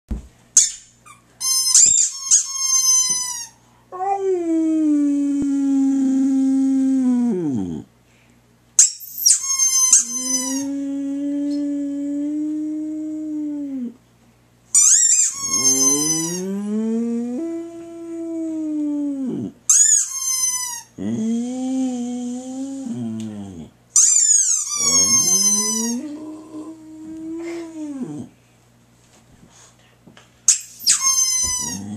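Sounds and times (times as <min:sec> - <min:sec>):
squeaky dog toy squealing: 0:00.6 - 0:03.6, 0:08.8 - 0:10.7, 0:14.8 - 0:16.4, 0:19.7 - 0:20.9, 0:24.0 - 0:26.0, 0:30.5 - 0:31.9
dog howling: 0:04.0 - 0:07.9, 0:09.8 - 0:14.0, 0:15.4 - 0:19.5, 0:21.0 - 0:23.7, 0:24.7 - 0:28.3, 0:31.0 - 0:31.9.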